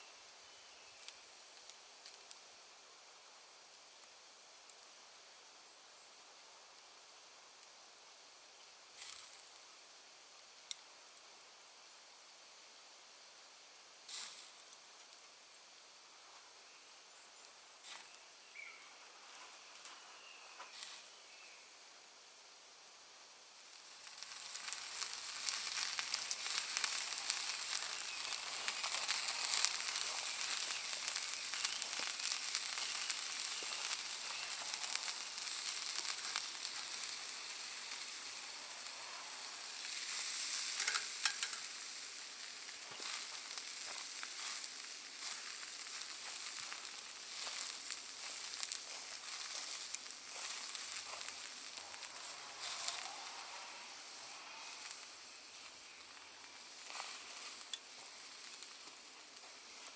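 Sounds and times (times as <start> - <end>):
sausages sizzling: 0.0 - 59.9
charcoal crackling pops: 1.0 - 2.7, 3.6 - 5.0, 8.6 - 11.4, 14.1 - 15.4, 17.4 - 18.3, 20.6 - 21.2, 23.6 - 59.9.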